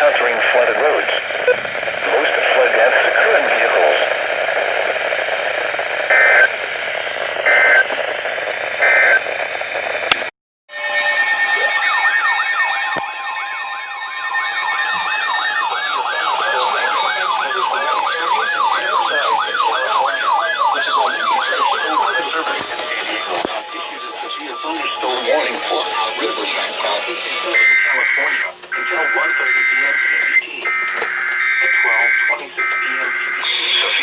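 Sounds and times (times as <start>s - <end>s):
radio hiss: 0.0s - 9.2s, 15.5s - 34.0s
data tone bursts: 10.7s - 34.0s
siren-like rising sweep: 10.7s - 34.0s
steady tones: 10.7s - 34.0s.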